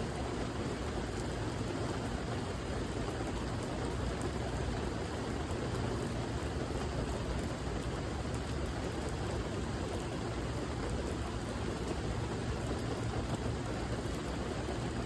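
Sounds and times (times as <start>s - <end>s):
steady rain falling: 0.0s - 15.0s.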